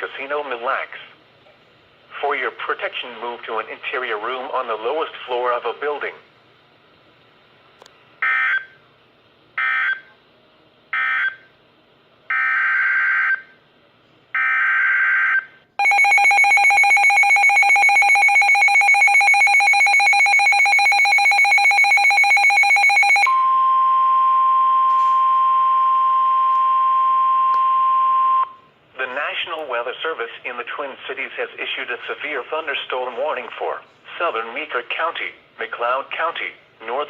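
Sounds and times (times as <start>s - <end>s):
two-tone attention signal: 15.8s - 28.7s.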